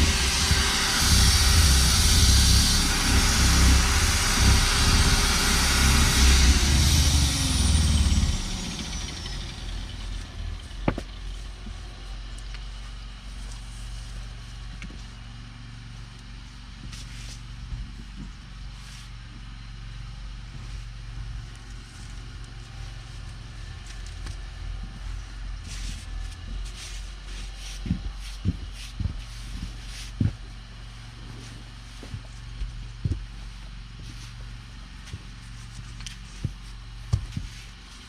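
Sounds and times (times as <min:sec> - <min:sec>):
snow-clearing machine engine: 0:00.0 - 0:38.0
dull thumps: 0:27.8 - 0:38.0.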